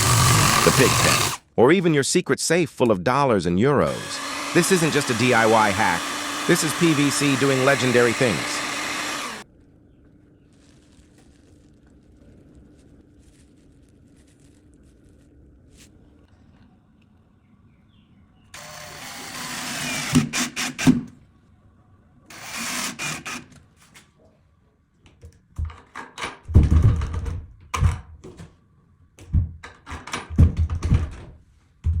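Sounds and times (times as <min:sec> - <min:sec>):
hard plastic scraping: 0:00.0 - 0:01.4
plastic clacks and thumps: 0:25.1 - 0:28.6, 0:29.2 - 0:32.0.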